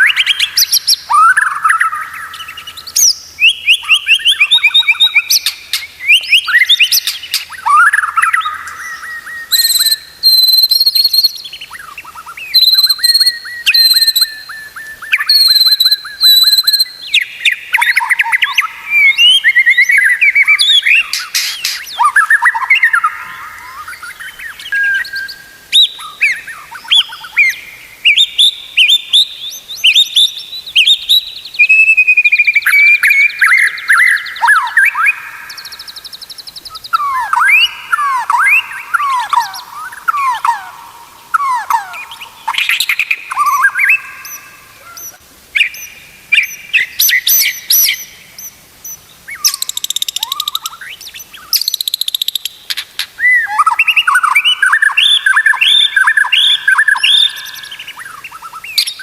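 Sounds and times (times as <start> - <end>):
bird singing varied song: 0.0 - 59.0.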